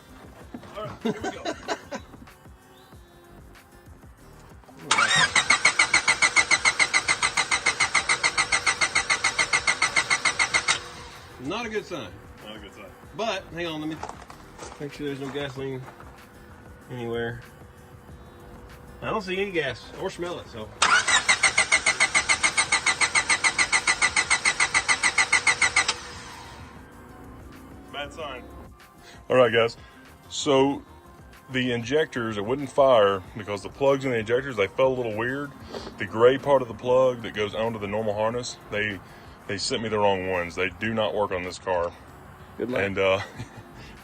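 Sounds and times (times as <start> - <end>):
car engine cranking on starter: 4.8 - 11.4, 20.6 - 26.8.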